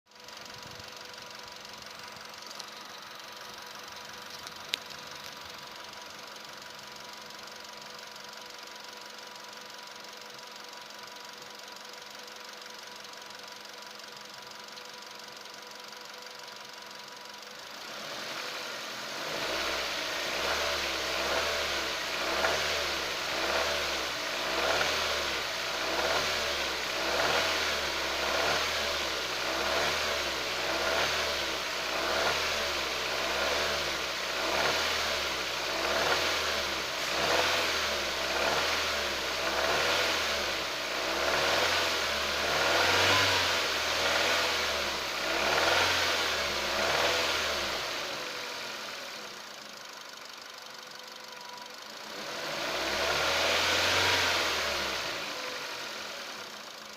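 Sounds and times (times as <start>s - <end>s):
car engine revving: 17.6s - 50.6s, 51.8s - 56.9s.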